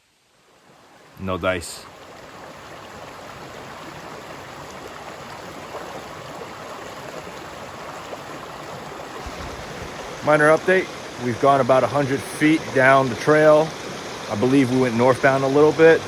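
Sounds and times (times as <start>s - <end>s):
stream flowing: 0.0s - 16.0s
soft low thump: 9.2s - 10.2s.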